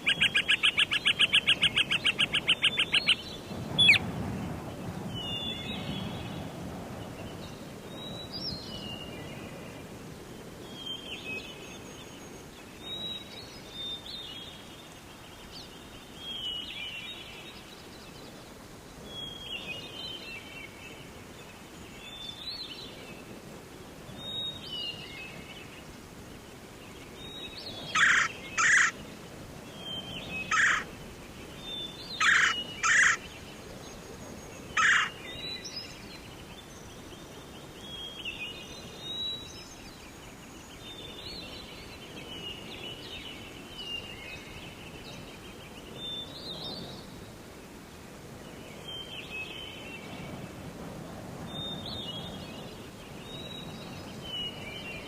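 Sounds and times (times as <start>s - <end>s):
rapid pulsed bird trill: 0.0s - 3.2s, 32.1s - 33.2s
sharp bird calls: 0.0s - 3.2s, 3.8s - 4.1s, 27.7s - 29.0s, 30.4s - 30.9s, 32.1s - 33.4s, 34.6s - 35.6s
birds singing: 0.0s - 4.4s, 24.2s - 29.0s, 29.7s - 47.2s.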